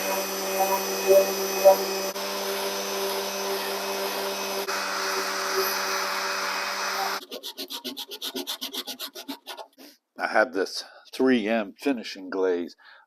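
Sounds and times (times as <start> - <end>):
orbital sander running: 0.0 - 7.2
hand-sanding strokes: 6.8 - 9.9.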